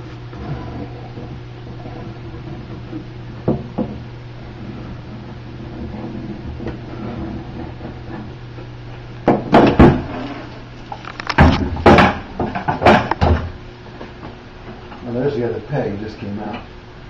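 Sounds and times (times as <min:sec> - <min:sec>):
steady low hum: 0:00.0 - 0:17.0
wooden chair parts knocking: 0:02.9 - 0:04.0, 0:11.0 - 0:13.5.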